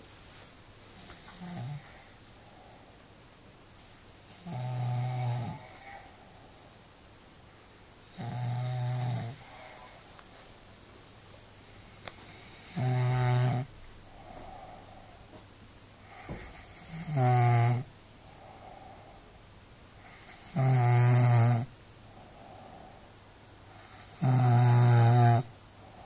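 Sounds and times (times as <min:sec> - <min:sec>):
person snoring heavily: 0:04.4 - 0:06.2, 0:08.1 - 0:10.0, 0:12.2 - 0:15.1, 0:16.2 - 0:19.1, 0:20.2 - 0:21.7, 0:23.8 - 0:25.5
soft breath: 0:09.3 - 0:10.6, 0:14.0 - 0:16.6, 0:18.2 - 0:19.4, 0:22.1 - 0:23.2.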